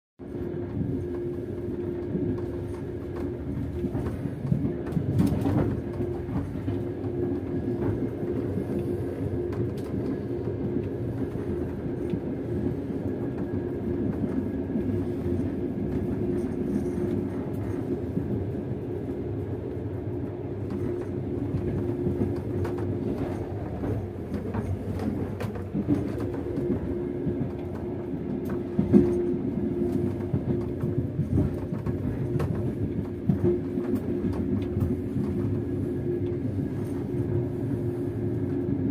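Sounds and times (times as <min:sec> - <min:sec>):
train wheels clattering on rails: 0:00.4 - 0:19.8, 0:20.5 - 0:38.9.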